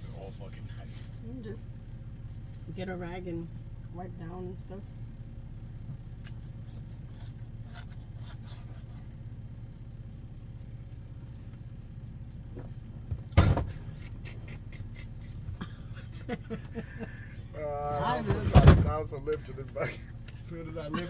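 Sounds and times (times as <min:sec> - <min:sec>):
low mechanical hum: 0:00.0 - 0:21.0
loud thump: 0:13.1 - 0:13.8, 0:18.3 - 0:19.0.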